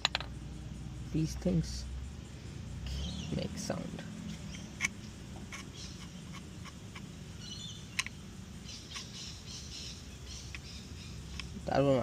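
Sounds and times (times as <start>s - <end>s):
faint bird chirping: 0.0s - 12.0s.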